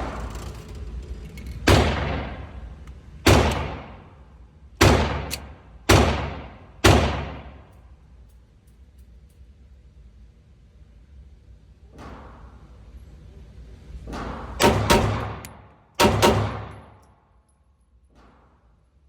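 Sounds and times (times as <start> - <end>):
pistol shots ringing out: 4.8 - 7.6, 14.6 - 17.0.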